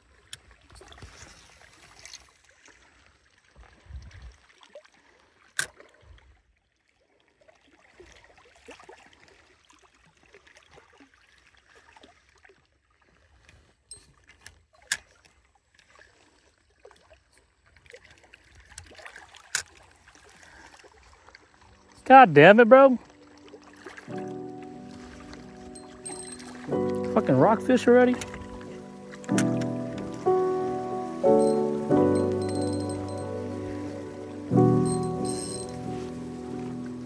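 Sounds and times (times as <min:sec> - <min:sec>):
faint water: 0:00.0 - 0:37.0
sharp clicks: 0:28.1 - 0:30.1.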